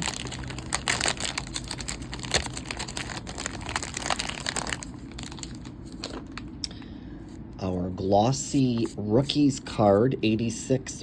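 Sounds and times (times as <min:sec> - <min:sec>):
cards and packaging rustling: 0:00.0 - 0:06.6.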